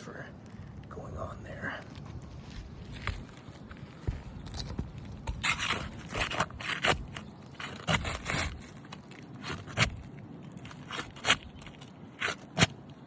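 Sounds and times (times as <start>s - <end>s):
roof shingles scraping and crackling: 2.8s - 13.0s.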